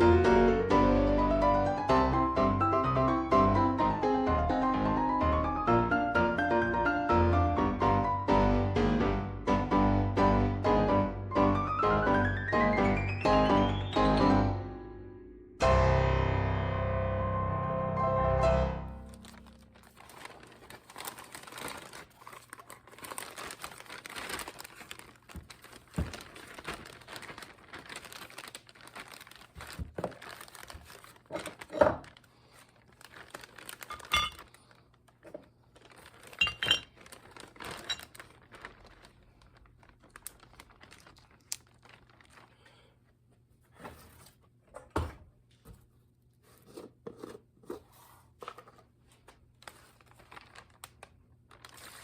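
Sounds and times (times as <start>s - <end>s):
rustling and crinkling: 19.0s - 44.6s, 45.5s - 52.0s.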